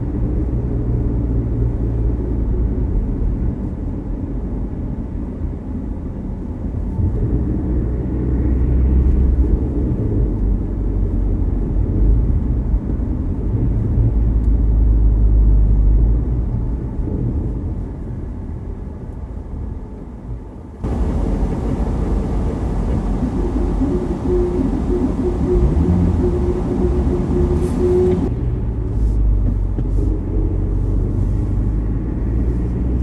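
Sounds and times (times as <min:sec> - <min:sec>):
odd car noise: 0:20.8 - 0:28.3
car driving low rumble: 0:20.8 - 0:33.0.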